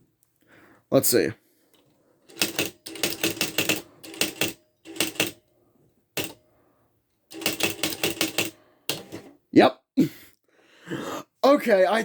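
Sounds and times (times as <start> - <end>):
typewriter mechanical strikes: 2.3 - 5.4, 6.2 - 6.4, 7.3 - 9.3.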